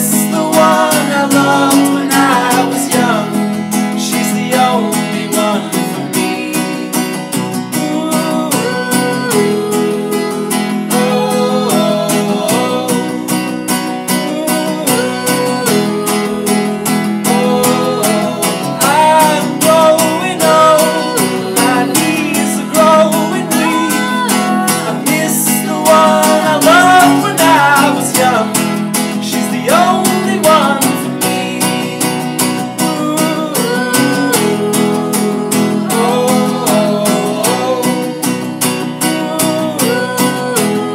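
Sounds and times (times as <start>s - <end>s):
sliding lead melody: 0.0s - 39.8s
acoustic guitar strumming: 0.0s - 40.9s.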